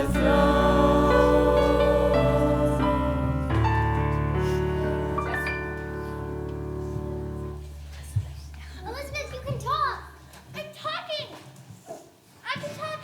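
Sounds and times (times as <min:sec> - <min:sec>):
piano chords: 0:00.0 - 0:09.6.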